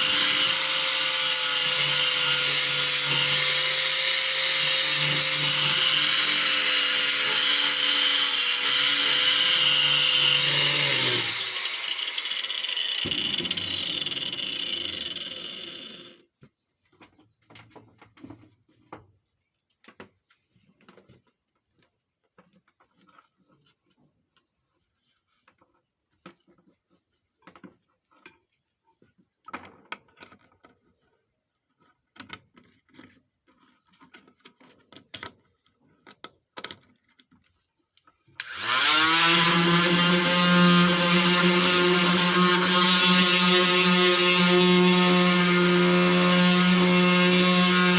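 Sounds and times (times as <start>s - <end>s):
electric sander running: 0.0s - 16.2s, 38.4s - 47.9s.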